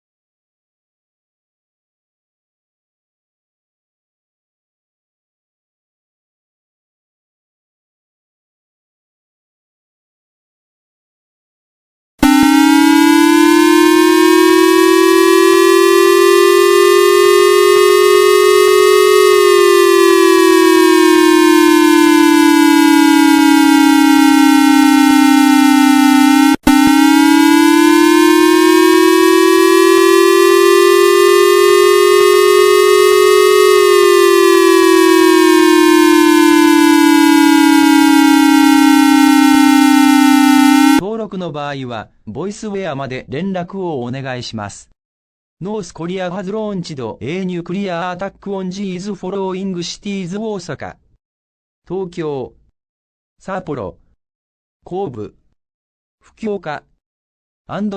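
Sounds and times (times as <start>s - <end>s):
electronic alert siren rising and falling: 12.2s - 41.0s.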